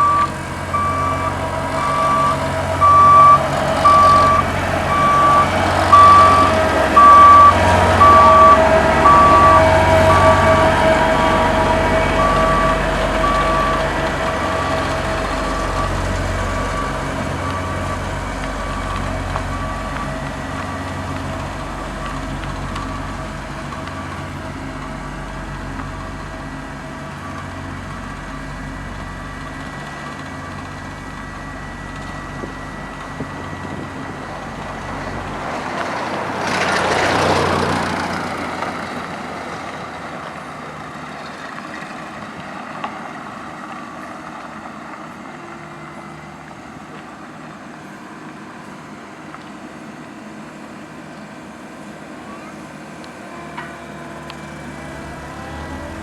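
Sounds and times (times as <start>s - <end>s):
machinery rushing past: 0.0s - 27.1s
reversing alarm beeping: 0.0s - 35.6s
diesel engine pulsing hum: 0.0s - 56.0s.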